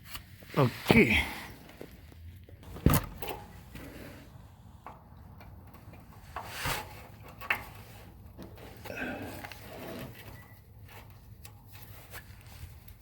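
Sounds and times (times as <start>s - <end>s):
rubbing or scraping: 6.2s - 11.1s.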